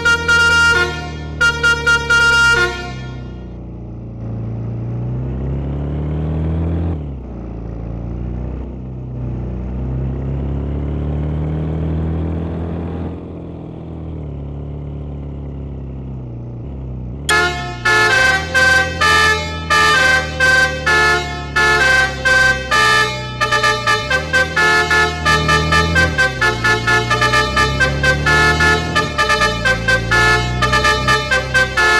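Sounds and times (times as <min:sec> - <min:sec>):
multi-tone bus horn tune: 0:00.0 - 0:03.6, 0:17.3 - 0:31.9
bus diesel engine revving: 0:00.0 - 0:31.9.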